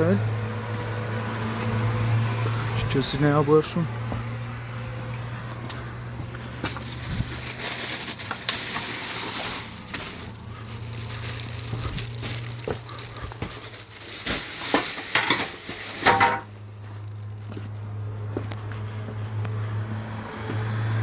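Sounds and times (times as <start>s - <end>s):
crackling rustling handling noise: 6.5s - 17.8s.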